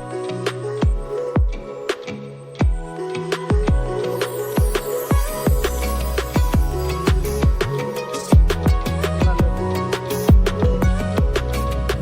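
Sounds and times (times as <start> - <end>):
electronic music: 0.0 - 12.0
deep bass kicks: 5.2 - 7.7, 8.4 - 12.0.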